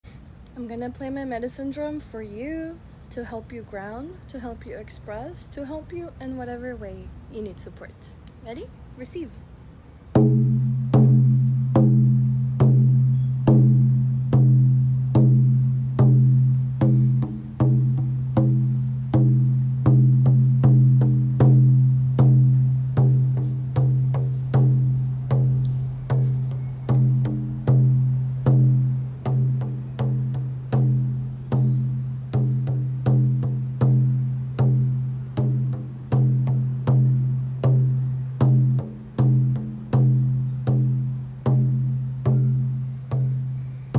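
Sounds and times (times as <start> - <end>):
frame drum beaten steadily: 10.2 - 43.7.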